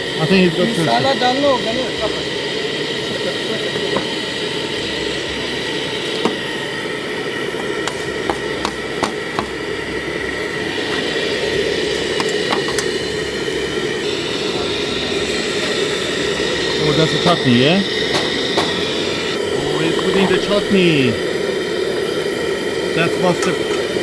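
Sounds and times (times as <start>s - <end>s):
steady background hum: 0.0s - 24.0s
utensils knocking and clicking: 6.1s - 6.5s, 7.6s - 9.8s, 11.9s - 13.1s, 18.0s - 19.0s, 23.4s - 24.0s.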